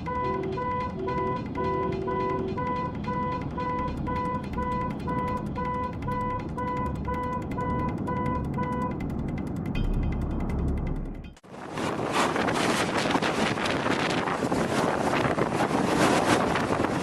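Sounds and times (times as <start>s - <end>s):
electronic beeping: 0.0s - 9.0s
steady rumbling noise: 0.0s - 17.0s.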